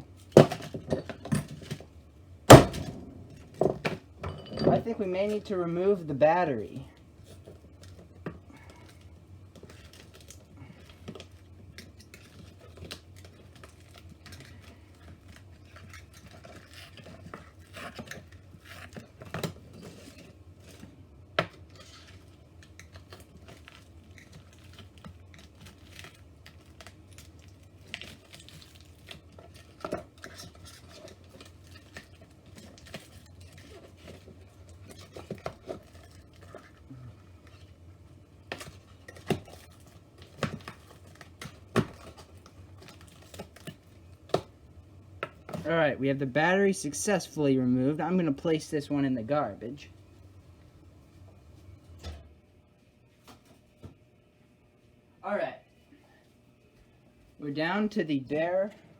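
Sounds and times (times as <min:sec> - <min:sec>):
steady low hum: 0:00.0 - 0:11.9, 0:32.0 - 0:58.9.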